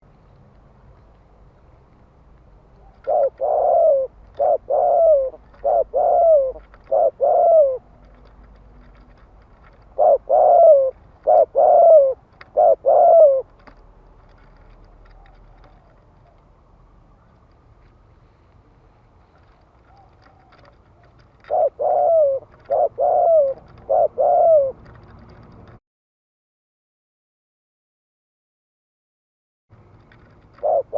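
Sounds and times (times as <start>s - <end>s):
dove cooing: 2.6s - 16.5s, 19.3s - 25.5s, 30.2s - 30.9s.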